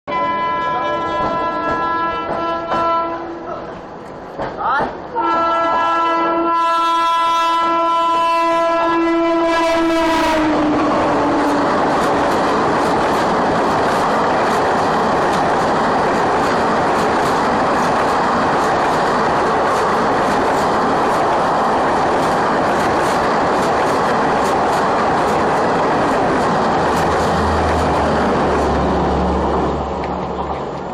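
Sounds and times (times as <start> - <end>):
locomotive horn blast: 0.1 - 3.5, 5.2 - 12.4
train coaches rushing past: 9.2 - 30.9.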